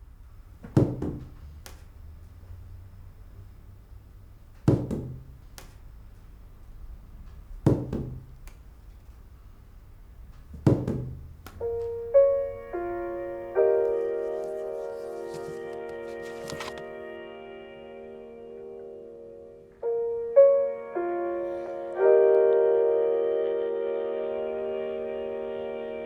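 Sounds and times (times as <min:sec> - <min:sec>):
low hum: 0:00.0 - 0:16.1
heavy thuds: 0:00.6 - 0:02.6, 0:04.5 - 0:05.9, 0:07.1 - 0:08.7, 0:10.2 - 0:14.2
held keyboard chords: 0:10.5 - 0:26.0.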